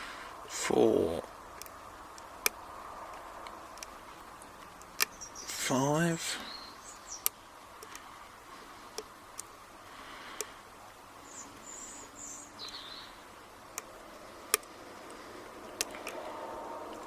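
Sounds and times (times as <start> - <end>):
bird chirping: 0.8 - 7.7, 10.4 - 17.0.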